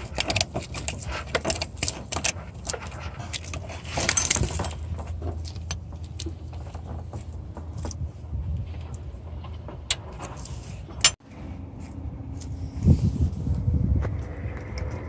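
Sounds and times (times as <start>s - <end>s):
metallic clinks and rattles: 0.0s - 8.0s.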